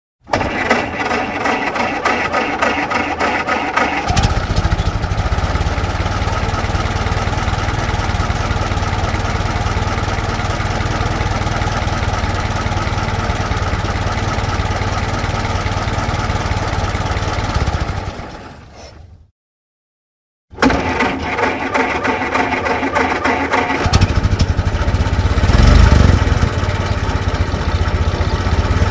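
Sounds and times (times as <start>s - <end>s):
car starter cranking engine: 0.2s - 6.6s, 20.6s - 26.5s
car engine running: 23.8s - 28.9s.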